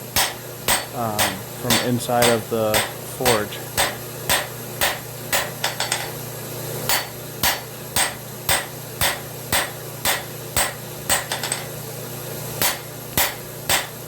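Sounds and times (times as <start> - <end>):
steady low hum: 0.0 - 14.0
hammer striking metal on anvil: 0.2 - 6.2, 6.9 - 11.7, 12.6 - 14.0.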